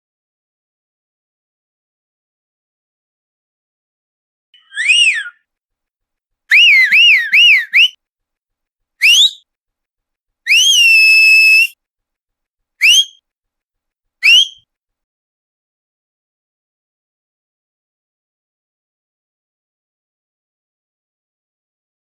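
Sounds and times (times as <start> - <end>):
person whistling: 4.6 - 5.3, 6.5 - 8.0, 9.0 - 9.4, 10.5 - 11.8, 12.8 - 13.2, 14.2 - 14.6.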